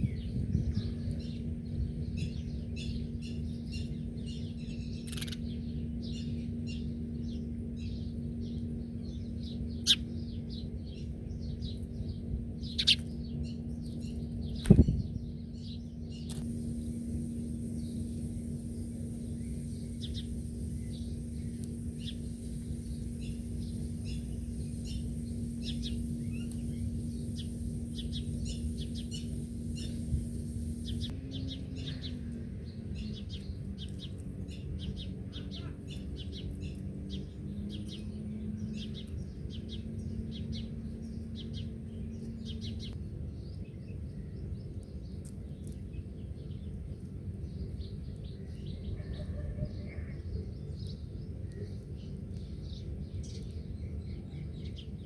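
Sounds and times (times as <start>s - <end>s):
low hum: 0.0s - 35.1s
small birds chirping: 0.0s - 55.0s.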